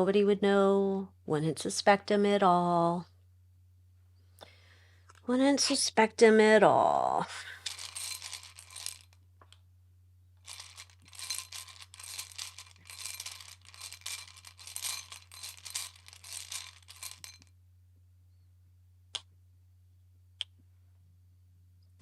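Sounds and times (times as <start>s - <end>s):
cards being shuffled: 7.6s - 9.1s, 10.4s - 17.4s.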